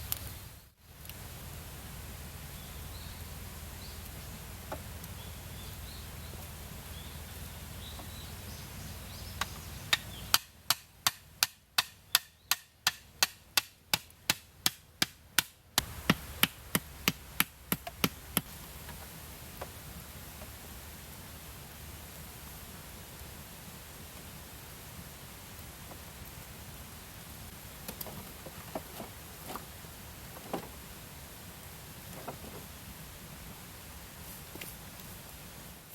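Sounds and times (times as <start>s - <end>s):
sharp evenly spaced knocks: 9.4s - 18.5s.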